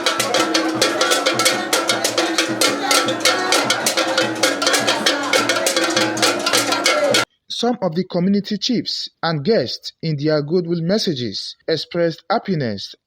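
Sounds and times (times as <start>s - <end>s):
fast drumming and percussion: 0.0s - 7.3s
sustained pitched backing: 0.0s - 7.3s.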